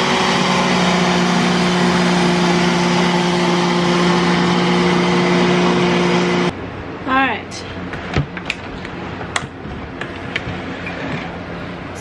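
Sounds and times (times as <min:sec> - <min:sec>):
blender motor whirring: 0:00.0 - 0:06.5.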